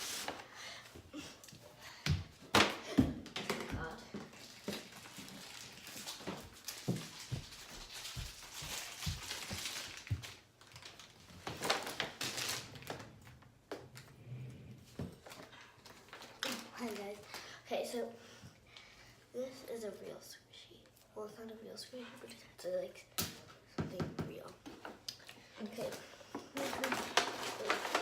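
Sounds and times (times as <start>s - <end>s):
objects knocking and thumping: 2.0s - 4.9s
plastic packaging crinkling: 4.3s - 13.4s, 15.2s - 17.6s, 25.8s - 28.0s.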